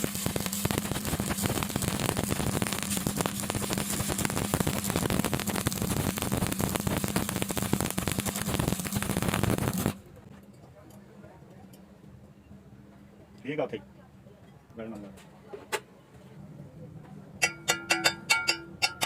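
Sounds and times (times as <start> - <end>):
welding arc crackling: 0.0 - 10.0
low electrical buzz: 0.0 - 10.3.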